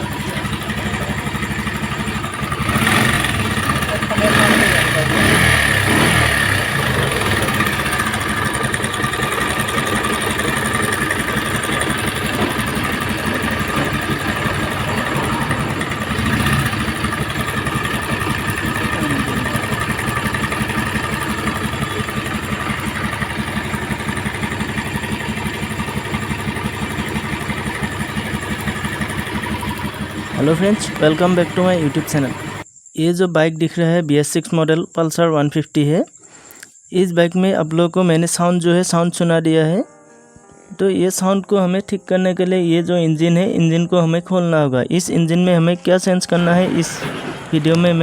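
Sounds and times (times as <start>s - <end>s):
motorcycle engine idling with clatter: 0.0s - 32.7s, 46.3s - 48.0s.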